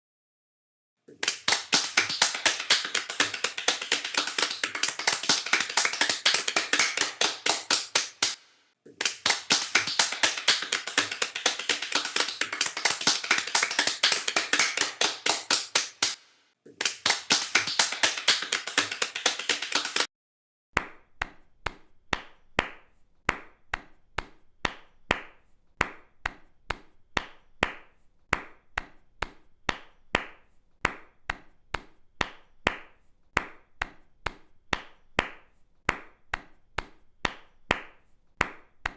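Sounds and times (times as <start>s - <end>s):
single person clapping: 1.1s - 20.1s
crowd applause: 17.0s - 20.1s.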